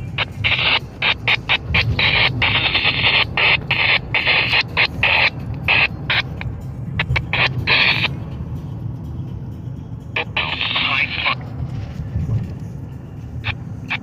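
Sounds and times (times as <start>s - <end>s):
choppy hissing static: 0.0s - 8.2s, 10.2s - 11.5s, 13.3s - 14.0s
steady low rumble: 0.0s - 14.0s.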